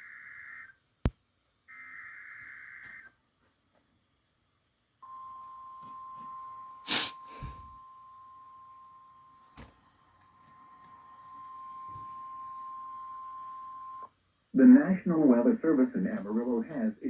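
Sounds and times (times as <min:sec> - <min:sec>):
steady warning alarm tone: 0:05.0 - 0:14.1
brief noise bursts: 0:06.8 - 0:07.7.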